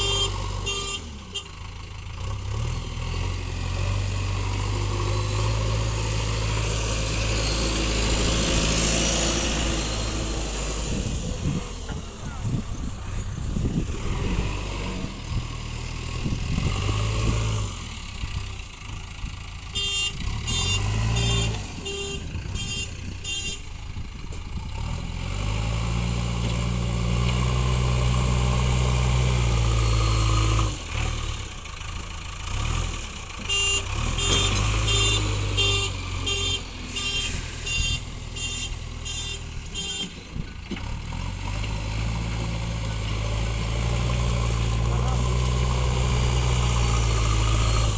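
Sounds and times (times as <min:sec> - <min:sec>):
diesel engine working: 0:00.0 - 0:47.9
reversing alarm beeps: 0:33.7 - 0:40.2.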